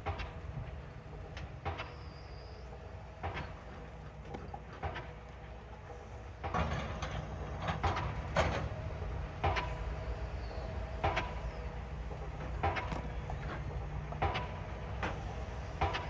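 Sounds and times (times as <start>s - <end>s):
excavator engine rumbling: 0.0s - 16.0s.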